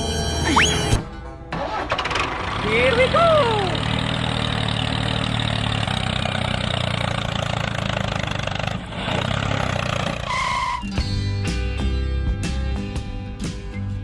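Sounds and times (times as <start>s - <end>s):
music: 0.0s - 2.1s, 10.7s - 14.0s
engine running: 0.3s - 10.6s.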